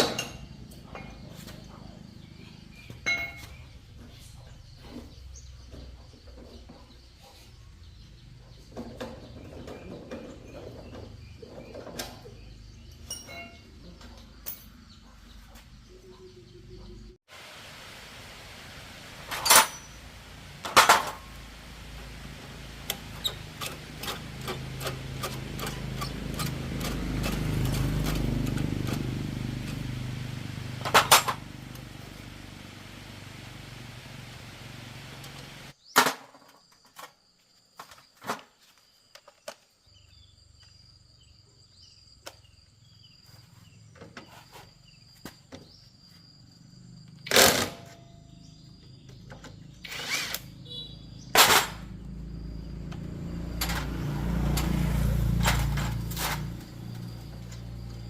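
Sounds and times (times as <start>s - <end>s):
hand tools knocking on metal parts: 22.9s - 32.0s.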